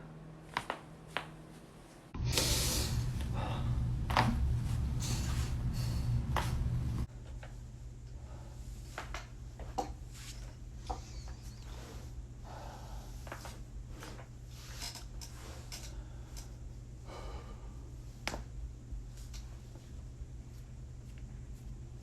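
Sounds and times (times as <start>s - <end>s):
low steady hum: 0.0s - 22.0s
person breathing: 2.2s - 7.0s, 8.1s - 9.1s, 10.9s - 18.2s.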